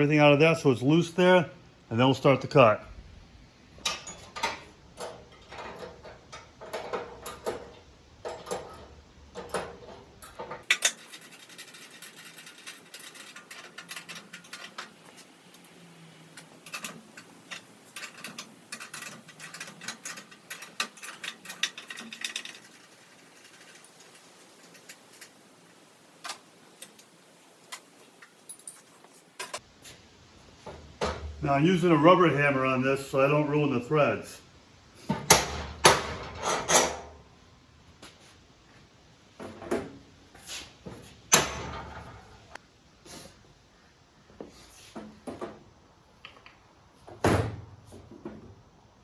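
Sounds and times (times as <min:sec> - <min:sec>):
metal tools clinking and knocking: 0:03.8 - 0:15.8, 0:16.4 - 0:25.5, 0:26.2 - 0:29.6.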